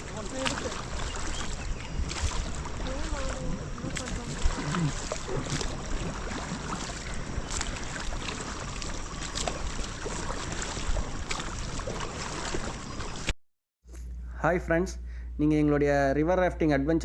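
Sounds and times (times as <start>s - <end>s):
sharp splashes and knocks: 0.0s - 13.3s.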